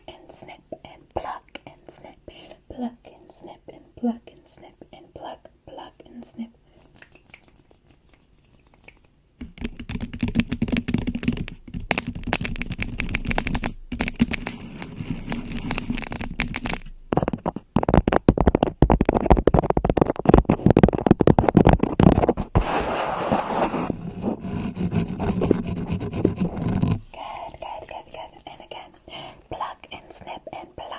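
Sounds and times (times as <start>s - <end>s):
scratching on microphone: 6.8s - 29.0s.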